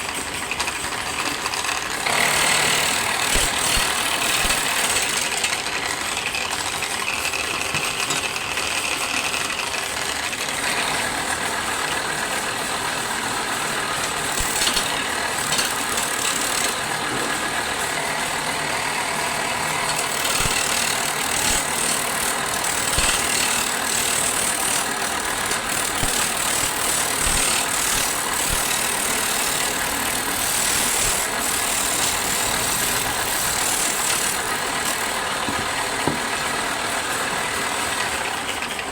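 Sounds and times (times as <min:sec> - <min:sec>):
wood lathe whirring: 0:00.0 - 0:38.9.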